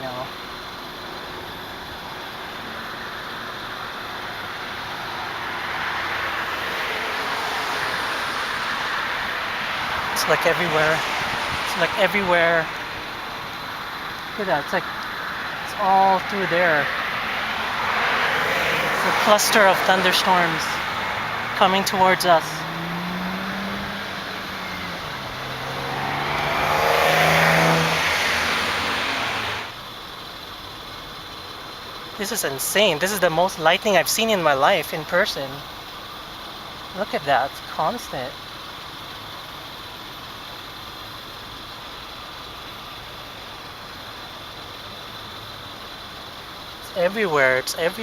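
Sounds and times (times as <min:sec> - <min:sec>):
outdoor background hiss: 0:00.0 - 0:48.0
car driving past: 0:04.5 - 0:13.6, 0:14.4 - 0:29.8.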